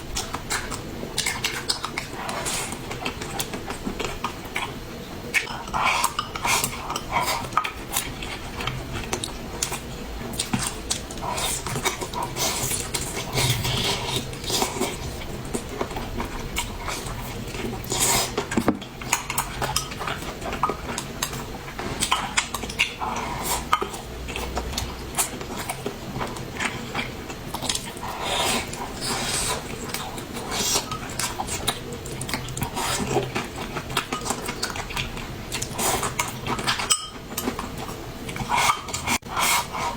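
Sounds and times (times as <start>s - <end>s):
utensils clinking on plates: 36.6s - 37.8s.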